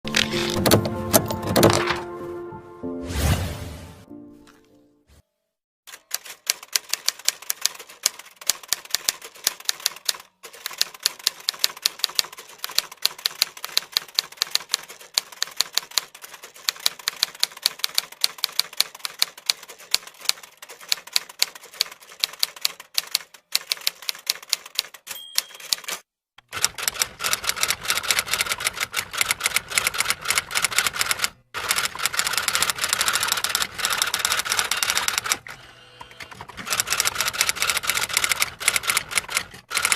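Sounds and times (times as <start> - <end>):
typewriter keys clacking: 0.1 - 2.0, 5.9 - 35.4, 36.3 - 39.9
short ringing tone: 25.1 - 25.8.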